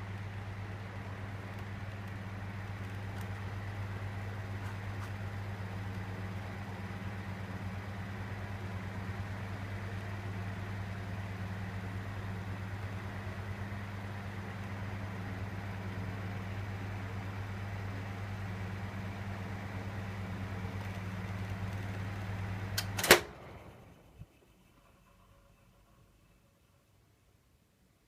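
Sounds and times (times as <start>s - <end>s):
ventilation fan humming: 0.0s - 28.0s
fan switch click: 22.7s - 23.7s.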